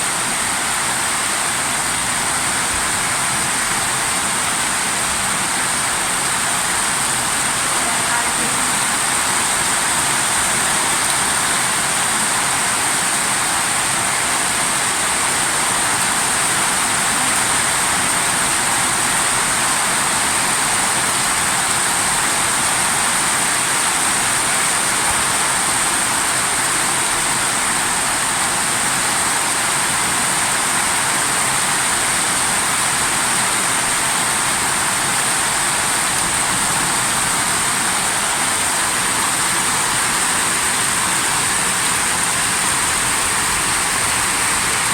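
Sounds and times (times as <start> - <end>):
torrential water rushing: 0.0 - 44.9.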